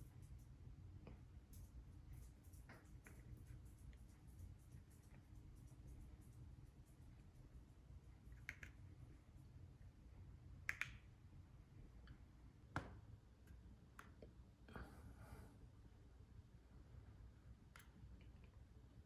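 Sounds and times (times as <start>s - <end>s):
small sharp clicks: 8.3s - 8.9s, 10.6s - 11.1s.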